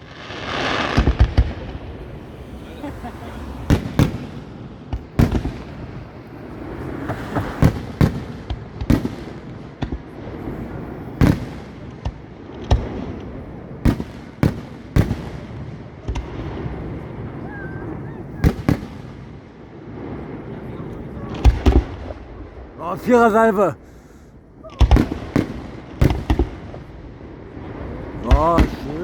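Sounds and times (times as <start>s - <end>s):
echoing noise: 1.1s - 7.4s.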